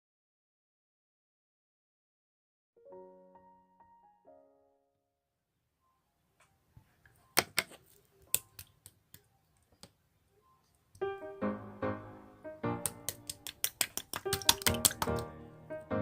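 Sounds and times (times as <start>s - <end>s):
piano background music: 2.8s - 5.2s, 10.4s - 16.0s
slime squishing with popping clicks: 7.4s - 9.2s, 12.8s - 15.2s.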